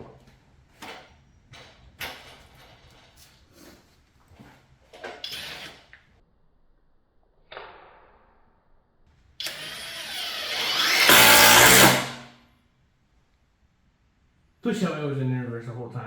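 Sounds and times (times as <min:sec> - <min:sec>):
impact driver motor and hammering: 0:09.4 - 0:12.3.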